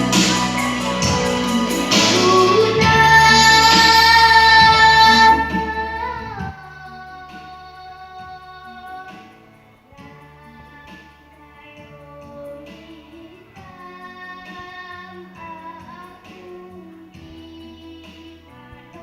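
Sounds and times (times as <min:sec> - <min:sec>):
instrumental accompaniment: 0:00.0 - 0:11.2
child singing: 0:01.9 - 0:09.3, 0:10.0 - 0:19.0.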